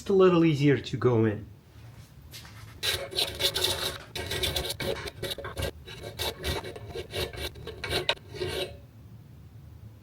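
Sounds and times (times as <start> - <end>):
hand file rasping: 2.8 - 8.8.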